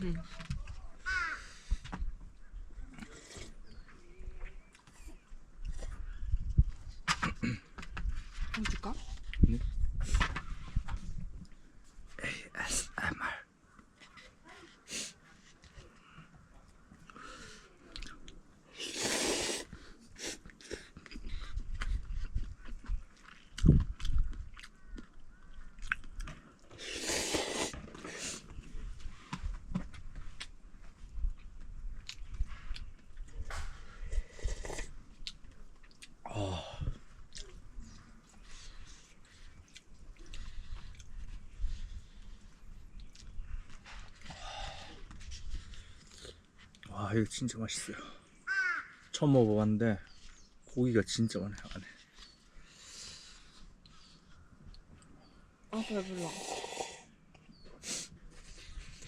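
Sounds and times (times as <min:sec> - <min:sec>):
slurping noodles: 0:18.7 - 0:21.6, 0:26.7 - 0:28.4, 0:34.1 - 0:35.0, 0:55.8 - 0:57.2
chewing and mouth clicks: 0:20.2 - 0:27.8, 0:32.0 - 0:33.7, 0:34.5 - 0:36.2, 0:38.6 - 0:41.2, 0:43.0 - 0:43.4.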